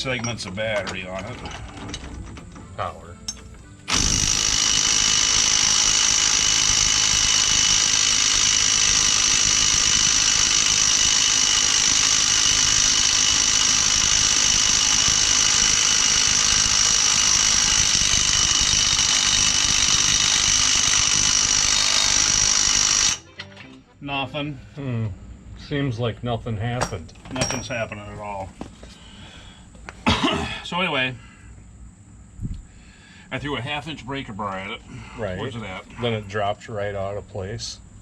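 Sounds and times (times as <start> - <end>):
impact wrench hammering: 0.0 - 23.2.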